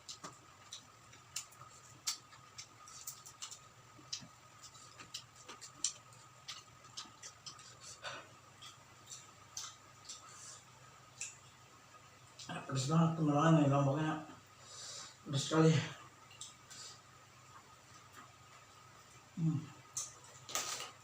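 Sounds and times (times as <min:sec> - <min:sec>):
crunchy chewing: 0:00.0 - 0:11.5
faint steady hum: 0:00.0 - 0:21.0.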